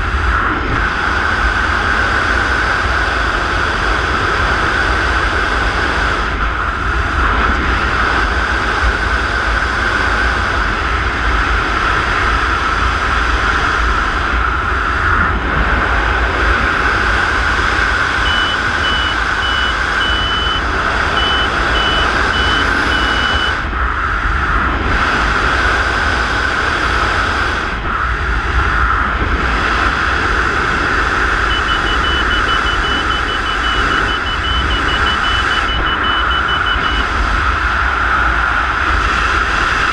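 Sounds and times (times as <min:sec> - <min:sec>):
low rumble: 0:00.0 - 0:39.9
short high electronic beeps: 0:18.2 - 0:23.6, 0:31.5 - 0:37.1.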